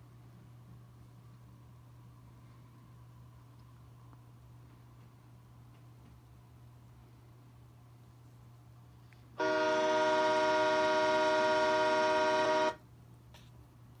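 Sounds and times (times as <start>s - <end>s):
train horn blast: 9.4s - 12.8s.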